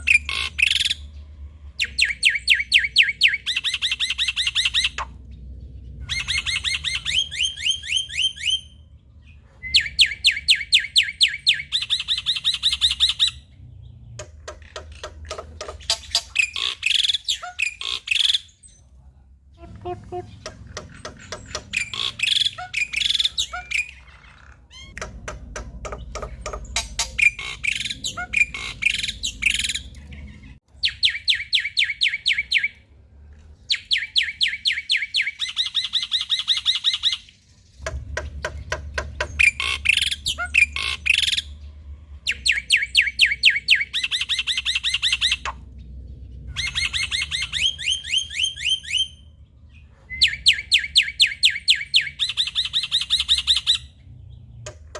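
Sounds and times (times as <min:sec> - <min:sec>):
bird singing chattering trills: 0:19.6 - 0:32.8, 0:33.7 - 0:54.9.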